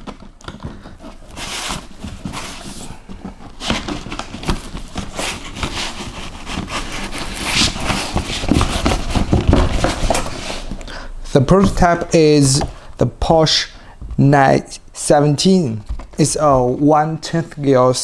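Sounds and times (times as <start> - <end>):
cardboard box being opened: 0.0 - 10.8.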